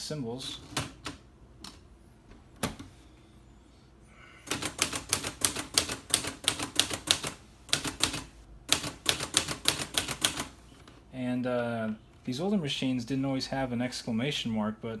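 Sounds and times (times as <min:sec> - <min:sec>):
typewriter typing: 0:04.5 - 0:10.6.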